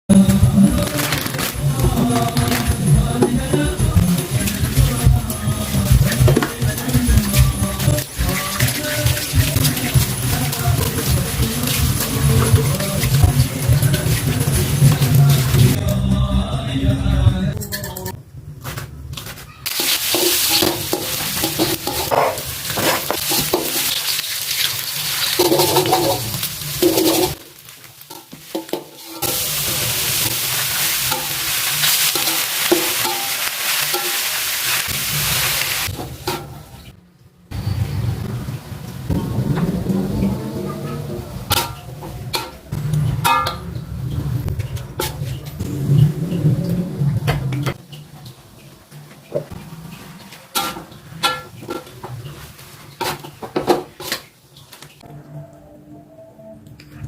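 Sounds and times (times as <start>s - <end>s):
food sizzling in hot pan: 3.8s - 15.8s, 19.7s - 36.8s
metal utensil clanking on pan: 19.7s - 27.4s, 31.1s - 34.3s, 41.5s - 43.8s, 50.5s - 52.2s.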